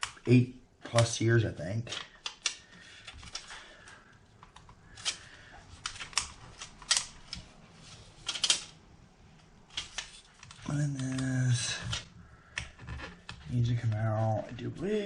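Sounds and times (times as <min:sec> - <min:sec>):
small clicks of laptop parts: 0:01.9 - 0:07.5.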